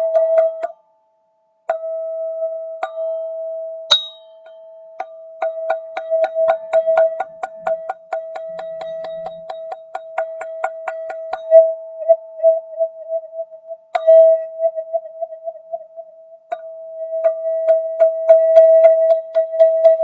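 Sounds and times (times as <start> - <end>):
metal tube chime ringing: 3.9 - 7.6.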